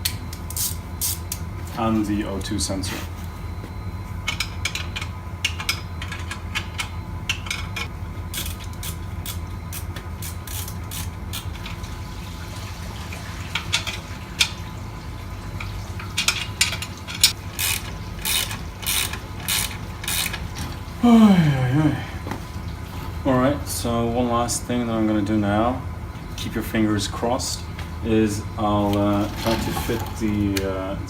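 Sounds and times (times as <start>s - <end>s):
steady low hum: 0.0s - 31.0s
ratchet wrench clicking: 0.5s - 1.4s, 7.3s - 11.5s, 17.2s - 20.4s.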